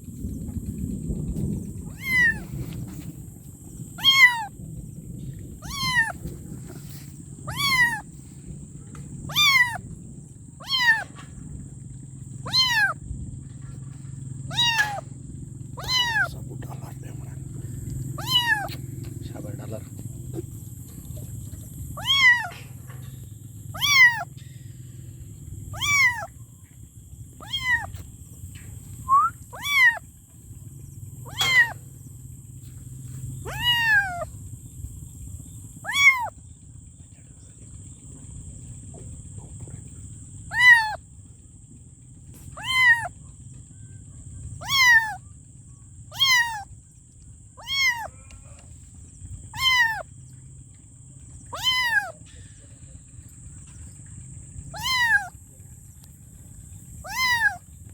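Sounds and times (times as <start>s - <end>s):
kitten meowing: 1.8s - 3.2s, 3.9s - 4.6s, 5.5s - 8.1s, 9.2s - 9.9s, 10.6s - 11.2s, 12.4s - 13.0s, 14.5s - 15.0s, 15.8s - 18.9s, 21.9s - 22.7s, 23.7s - 24.3s, 25.7s - 26.3s, 27.4s - 28.0s, 29.0s - 30.0s, 31.2s - 31.8s, 33.4s - 34.3s, 35.8s - 36.4s, 40.5s - 41.0s, 42.5s - 43.2s, 44.6s - 45.2s, 46.1s - 46.7s, 47.6s - 48.2s, 49.5s - 50.1s, 51.5s - 52.2s, 54.7s - 55.4s, 57.0s - 57.7s.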